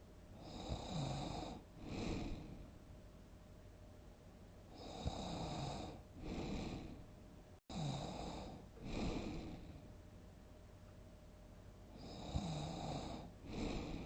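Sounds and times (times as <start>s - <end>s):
person snoring: 0.4s - 2.6s, 4.7s - 7.0s, 7.7s - 9.8s, 12.0s - 14.0s.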